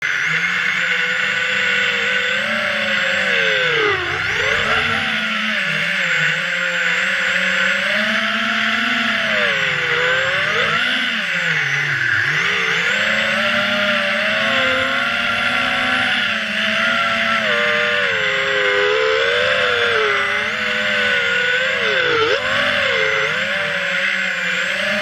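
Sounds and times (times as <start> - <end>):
drone motors whining: 0.0 - 25.0.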